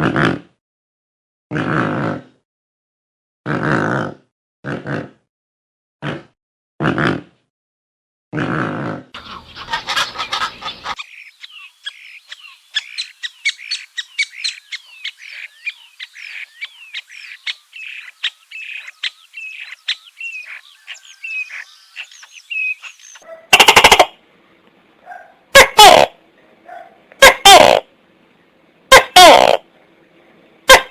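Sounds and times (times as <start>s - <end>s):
small birds chirping: 9.2s - 25.5s, 26.4s - 27.0s
loud pitched call: 23.4s - 24.2s, 25.6s - 26.2s, 27.2s - 27.9s, 28.9s - 29.6s.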